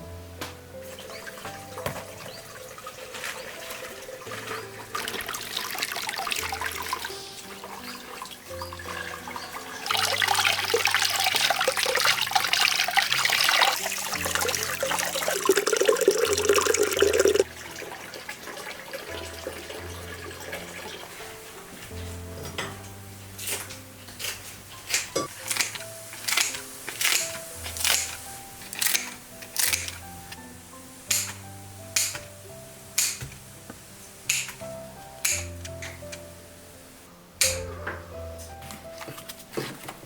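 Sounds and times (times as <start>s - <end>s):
soft background music: 0.0s - 40.0s
tap water running into sink: 1.0s - 21.3s.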